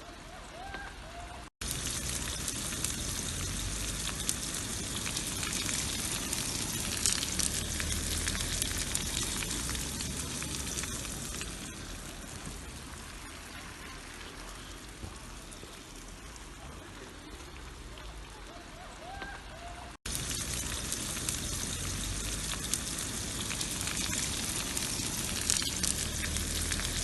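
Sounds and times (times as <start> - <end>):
sausage sizzling in a frying pan: 1.6 - 13.8, 20.0 - 27.0.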